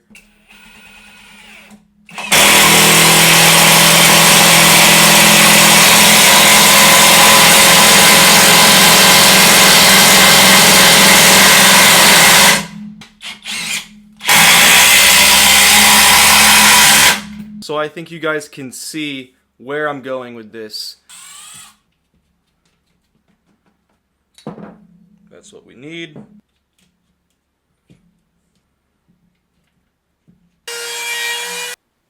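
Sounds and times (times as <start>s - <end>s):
power tool motor whining: 0.2s - 17.5s, 21.1s - 21.8s, 30.7s - 31.8s.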